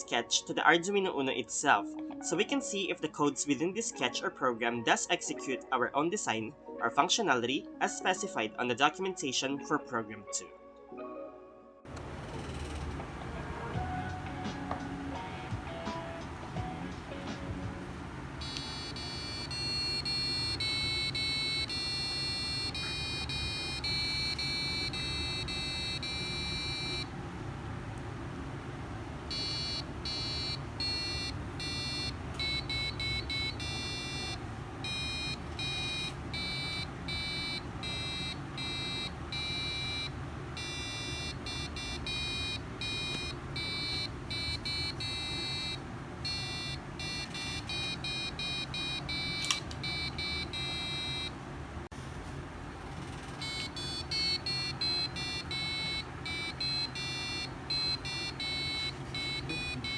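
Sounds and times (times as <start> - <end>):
steady low hum: 11.9 - 59.9
piezo buzzer beeping notes: 17.8 - 27.2, 29.3 - 51.4, 53.4 - 59.9.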